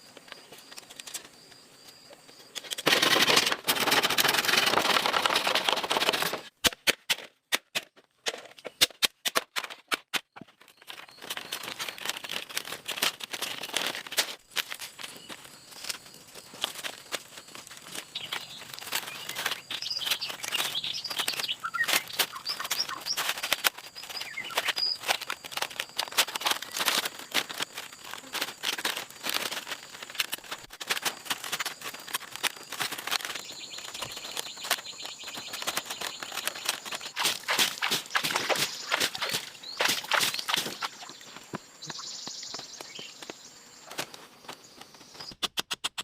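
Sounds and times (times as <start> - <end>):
sharp clicking and crackling: 0.1 - 46.0
birds chirping: 17.4 - 25.4, 33.2 - 45.4.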